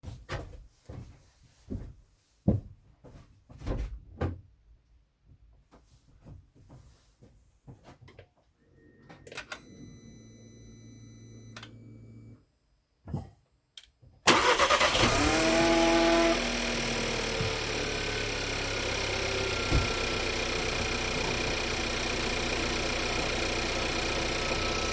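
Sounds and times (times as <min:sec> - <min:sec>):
faint high-pitched tones: 0:08.8 - 0:12.4
low electric hum: 0:09.6 - 0:12.4
car door thumps and clicks: 0:19.6 - 0:20.1.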